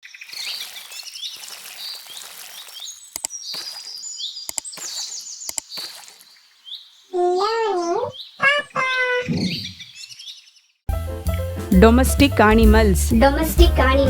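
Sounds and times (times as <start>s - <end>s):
outdoor background noise: 0.0s - 10.8s
songbirds chirping and trilling: 0.0s - 10.8s
sharp clicks: 3.1s - 3.4s, 4.5s - 4.9s, 5.5s - 5.7s.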